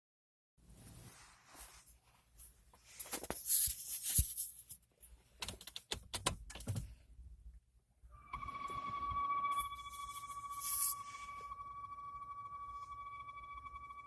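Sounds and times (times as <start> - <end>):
rustling: 0.7 - 5.4
clicking and knocking: 5.4 - 6.9.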